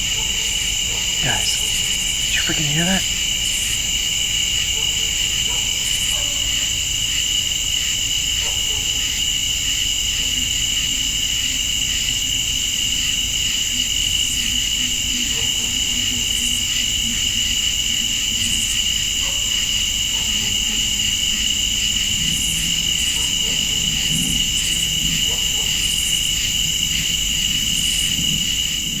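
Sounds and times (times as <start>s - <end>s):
crickets trilling: 0.0s - 29.0s.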